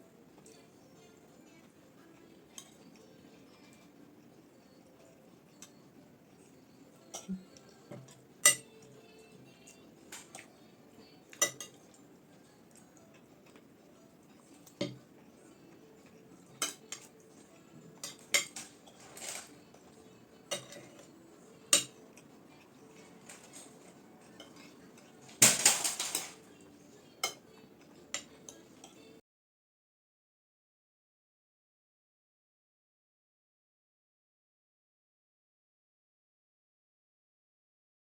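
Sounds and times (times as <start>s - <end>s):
cutlery clinking on plates: 7.0s - 8.9s, 11.3s - 12.0s, 14.6s - 15.0s, 16.0s - 17.3s, 17.9s - 19.9s, 20.5s - 22.2s, 22.9s - 29.1s.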